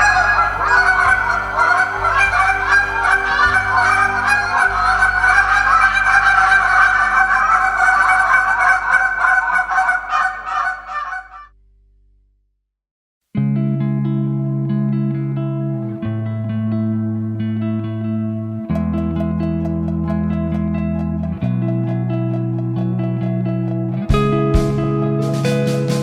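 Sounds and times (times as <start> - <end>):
goose calls honking: 0.0 - 11.4.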